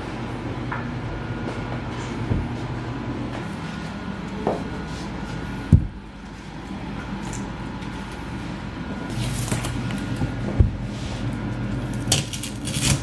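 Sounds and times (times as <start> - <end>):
steady low hum: 0.0 - 13.0
panel scraping and tearing: 12.0 - 13.0.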